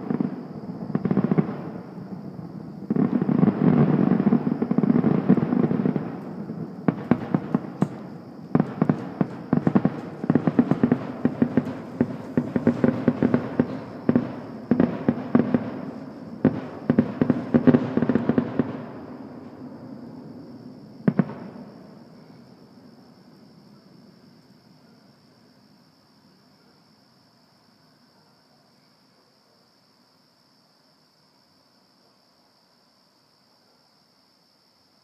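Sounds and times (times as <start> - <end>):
fireworks bangs and crackles: 0.0 - 23.3.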